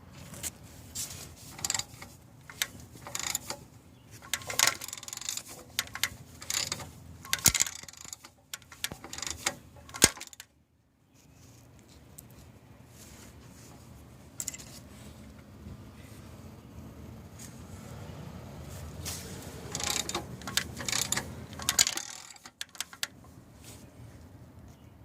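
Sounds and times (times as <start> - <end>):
timing chain rattling and clinking: 1.6 - 3.6, 4.2 - 10.5, 19.7 - 23.1.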